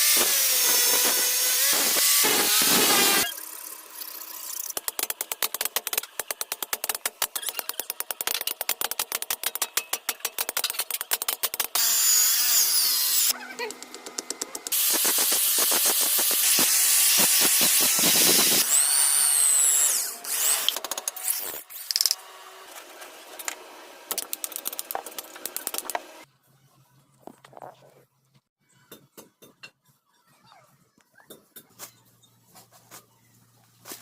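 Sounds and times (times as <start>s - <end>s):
power grinder grinding steel: 0.0s - 4.6s, 11.7s - 13.4s, 14.6s - 23.7s.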